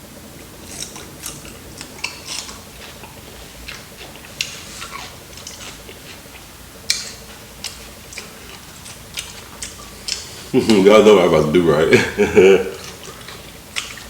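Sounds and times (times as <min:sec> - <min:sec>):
person chewing food: 0:00.4 - 0:14.0.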